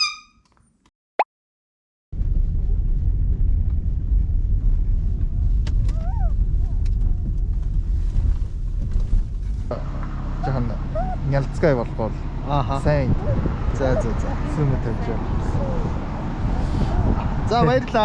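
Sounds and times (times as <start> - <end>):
loud low rumble: 2.1 - 18.0
puppy whining: 5.9 - 6.4, 10.3 - 11.3, 13.2 - 14.6.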